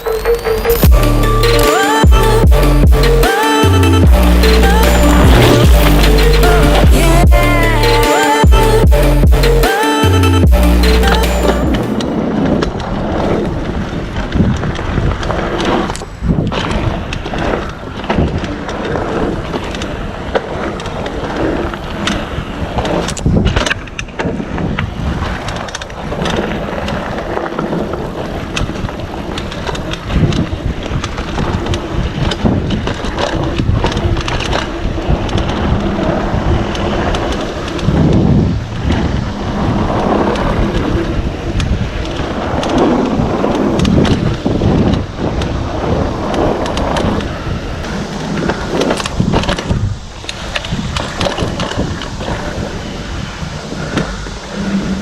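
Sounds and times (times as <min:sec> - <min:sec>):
bike tyre noise: 0:02.1 - 0:55.0
wind buffeting microphone: 0:11.8 - 0:55.0
bike knocking and rattling: 0:12.0 - 0:53.2.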